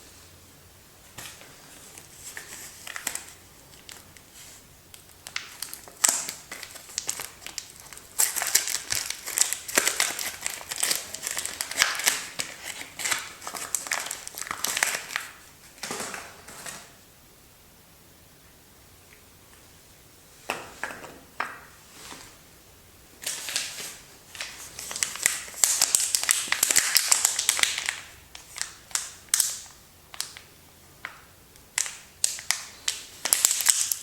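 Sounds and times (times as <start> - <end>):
soap wrapper crinkling: 1.9 - 4.3, 4.9 - 16.8, 23.2 - 34.0.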